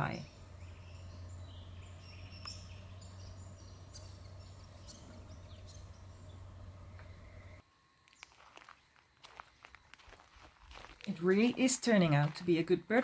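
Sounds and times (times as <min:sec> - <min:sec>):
small birds chirping: 0:00.0 - 0:09.0
steady low hum: 0:00.0 - 0:10.8.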